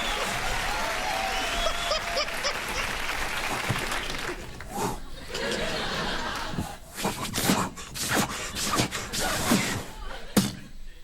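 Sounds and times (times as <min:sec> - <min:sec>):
audience applauding: 0:00.0 - 0:06.5.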